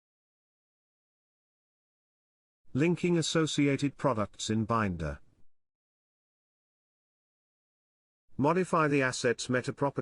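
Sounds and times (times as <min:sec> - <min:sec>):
synthesized narrator voice: 0:02.7 - 0:05.3, 0:08.4 - 0:10.0.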